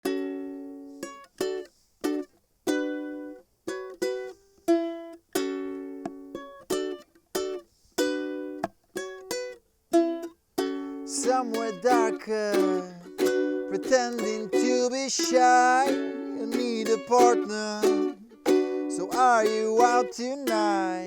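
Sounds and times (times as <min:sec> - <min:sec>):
ukulele muted chord stabs: 0:09.3 - 0:21.0.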